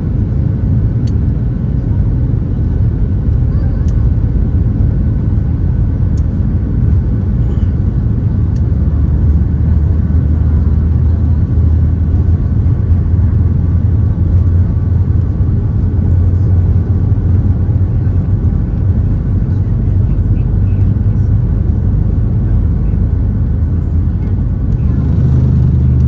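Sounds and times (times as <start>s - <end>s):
airliner cabin engine rumble: 0.0s - 26.0s.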